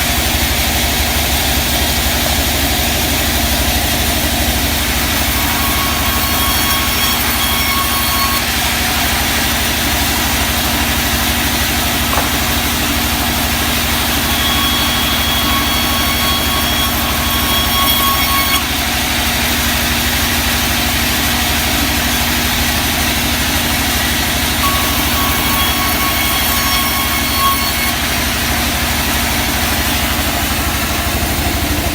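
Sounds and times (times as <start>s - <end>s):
sawmill machinery droning: 0.0s - 31.9s
thin high whine: 4.5s - 19.0s, 24.6s - 28.5s.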